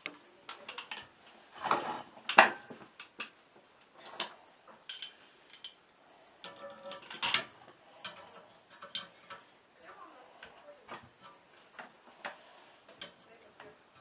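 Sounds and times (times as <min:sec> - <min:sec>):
handling clicks and metallic knocks: 0:04.0 - 0:05.8, 0:06.4 - 0:09.5, 0:10.4 - 0:14.0.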